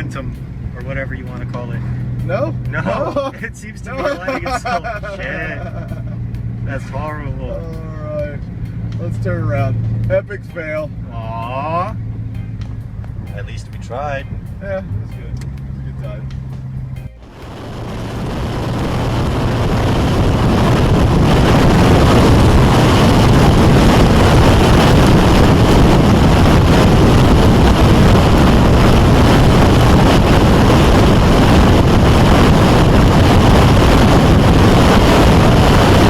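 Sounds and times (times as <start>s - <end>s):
road and engine noise: 0.0s - 36.0s
wind rushing over microphone: 17.2s - 36.0s.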